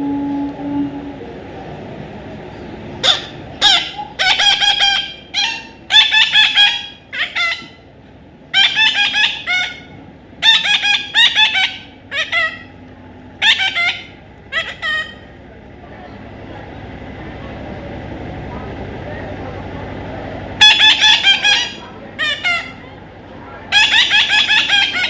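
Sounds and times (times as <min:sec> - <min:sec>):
parrot squawking: 0:03.0 - 0:07.8, 0:08.5 - 0:12.8, 0:13.4 - 0:15.3, 0:20.6 - 0:22.9, 0:23.7 - 0:25.0.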